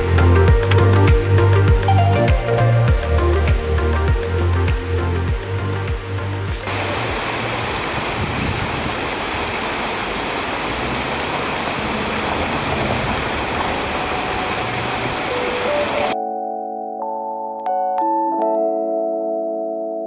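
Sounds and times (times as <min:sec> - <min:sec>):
steady rushing noise: 0:00.0 - 0:16.2.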